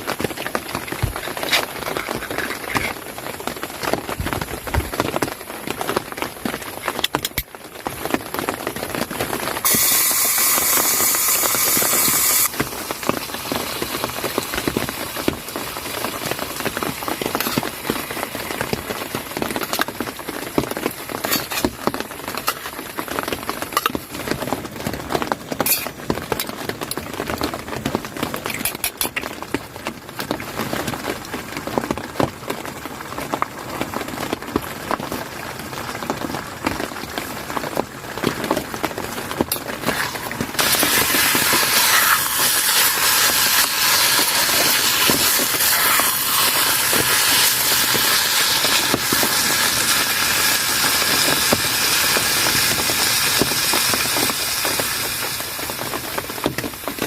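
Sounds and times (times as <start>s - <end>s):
rain pattering: 0.0s - 57.0s
bright high hiss: 9.6s - 12.6s.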